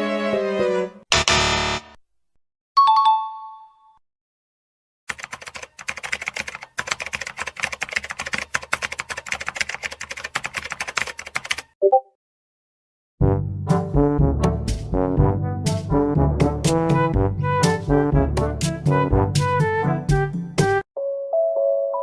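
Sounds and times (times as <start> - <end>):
rapid typing clicks: 5.1 - 11.8.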